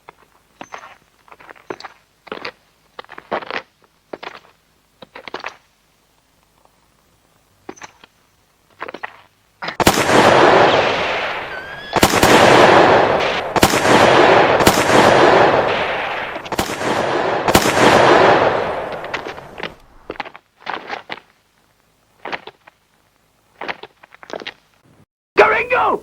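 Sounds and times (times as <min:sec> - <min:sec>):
echoing gunshots: 0:09.8 - 0:19.6.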